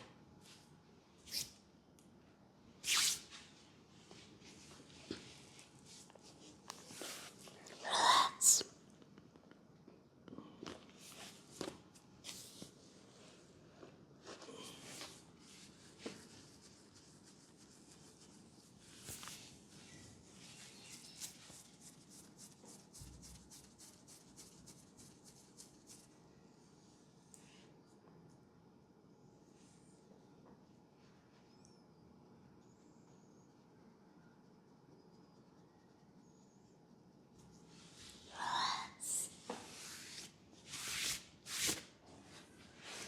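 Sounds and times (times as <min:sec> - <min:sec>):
hands rubbing during massage: 0:04.4 - 0:07.5, 0:15.0 - 0:26.2
soft whispering: 0:06.2 - 0:08.8, 0:35.2 - 0:39.6.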